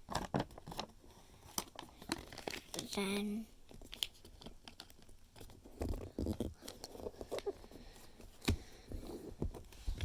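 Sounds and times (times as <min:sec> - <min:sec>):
paper rustling and crinkling: 0:00.0 - 0:10.0.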